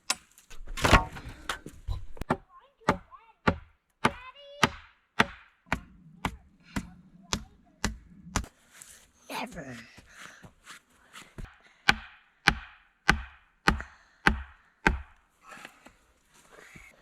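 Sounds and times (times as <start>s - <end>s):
wood being chopped: 0.0s - 8.5s, 11.4s - 15.2s.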